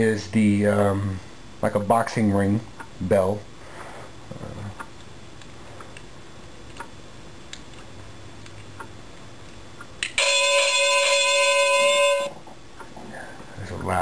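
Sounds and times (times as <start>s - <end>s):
electronic doorbell chime: 10.2s - 12.4s.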